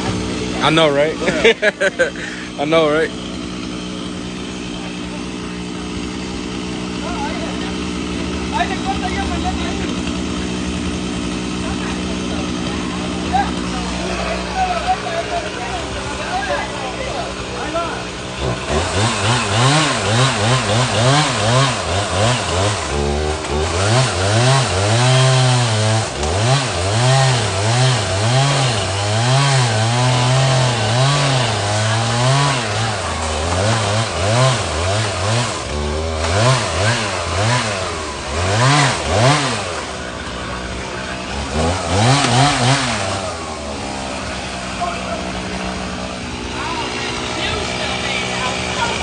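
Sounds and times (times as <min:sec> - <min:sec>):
chainsaw engine revving: 0:00.0 - 0:49.0.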